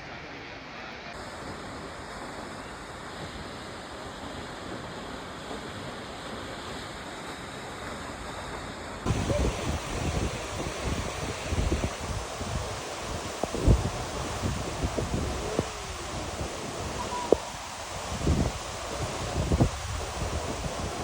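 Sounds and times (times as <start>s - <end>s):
wind buffeting microphone: 9.0s - 21.0s
waterfall rushing: 9.1s - 21.0s.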